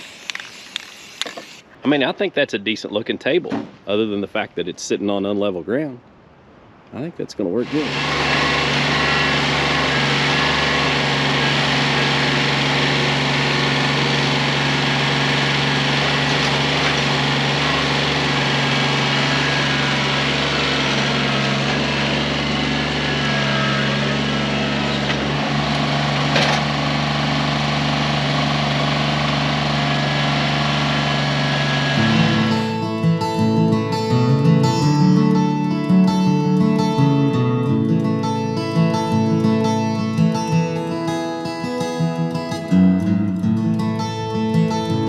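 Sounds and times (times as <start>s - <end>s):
small engine running at high speed: 0.0s - 1.7s, 7.6s - 35.5s.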